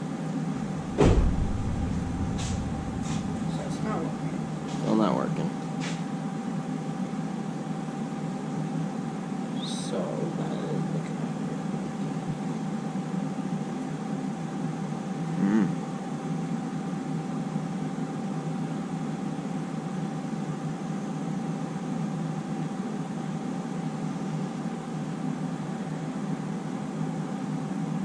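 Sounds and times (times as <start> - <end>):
mechanical hum: 0.0 - 28.0
thin whine: 0.5 - 5.8.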